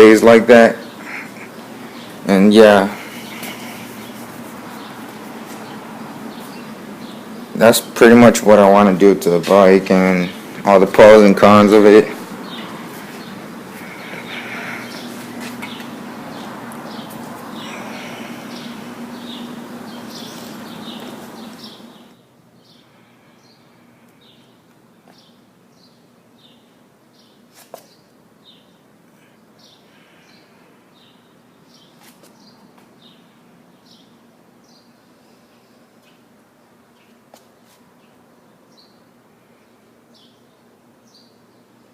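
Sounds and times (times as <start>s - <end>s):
steady hum with rushing noise: 0.0s - 27.6s
small bird chirping: 12.4s - 28.8s.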